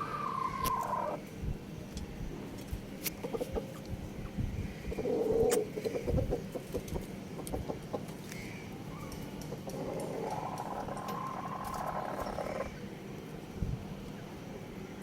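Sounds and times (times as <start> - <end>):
chickens clucking: 0.0 - 1.2, 3.1 - 8.4, 9.0 - 12.8.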